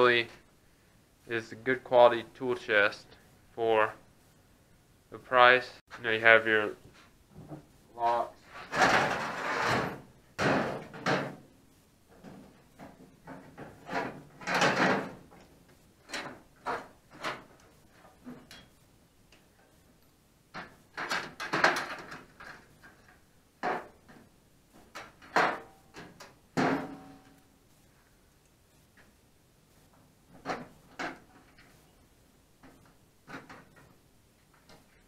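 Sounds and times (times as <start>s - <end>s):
steel drawers clunking and rattling: 8.6s - 11.5s, 12.2s - 15.3s, 20.6s - 23.0s.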